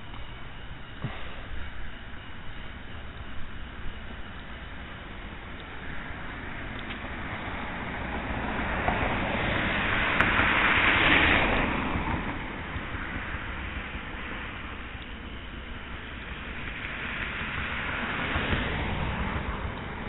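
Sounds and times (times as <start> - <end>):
car passing by: 5.9 - 14.5, 16.2 - 20.0.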